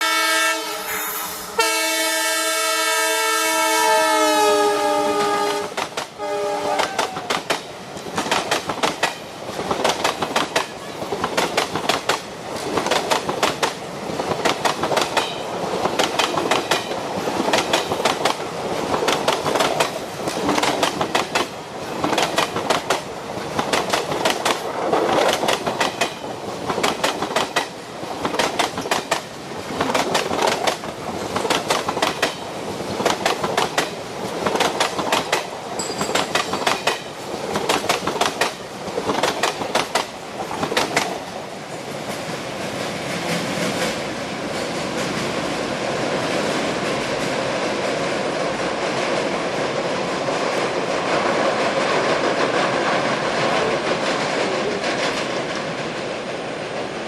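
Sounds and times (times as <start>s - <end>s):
locomotive horn blasts: 0.0s - 6.9s
train wheels clickety-clack: 5.1s - 57.0s.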